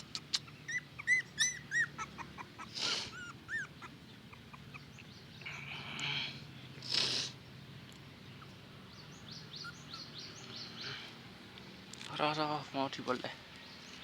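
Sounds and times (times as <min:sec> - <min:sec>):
puppies whimpering: 0:00.0 - 0:05.1, 0:09.6 - 0:10.2
soft breathy puppy noises: 0:00.0 - 0:06.1.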